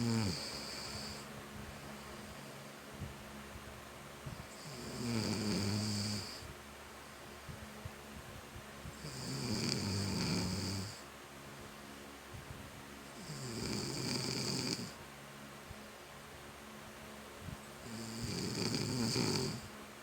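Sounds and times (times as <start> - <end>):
person snoring: 0.0 - 1.3, 4.5 - 6.5, 9.0 - 11.0, 13.2 - 15.0, 17.8 - 19.7
quiet breathing: 0.0 - 3.2, 4.2 - 7.7.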